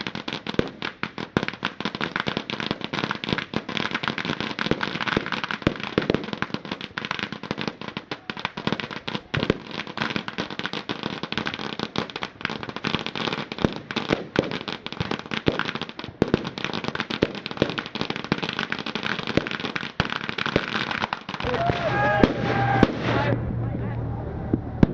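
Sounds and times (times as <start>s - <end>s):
fireworks crackling and banging: 0.0s - 24.9s.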